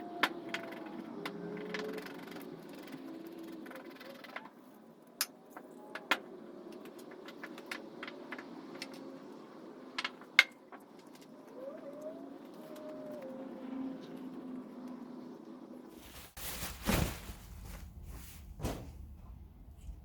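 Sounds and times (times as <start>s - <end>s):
faint low steady hum: 15.9s - 20.0s.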